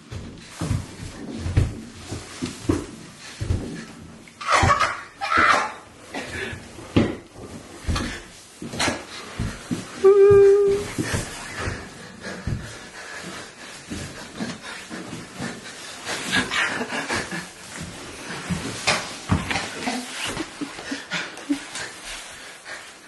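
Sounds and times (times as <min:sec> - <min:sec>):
person straining effort noises: 0:10.0 - 0:11.7.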